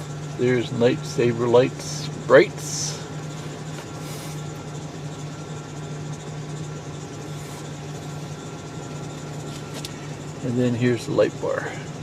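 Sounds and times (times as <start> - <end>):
truck engine idling: 0.0 - 12.0.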